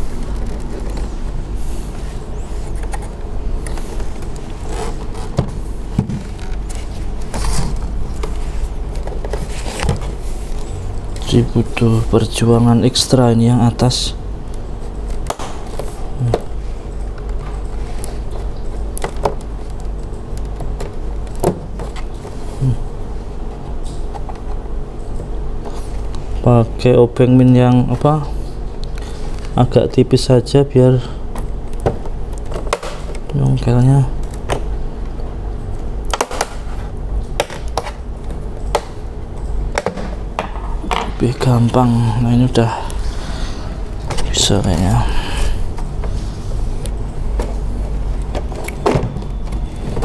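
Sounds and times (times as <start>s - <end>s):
steady low hum: 0.0s - 50.0s.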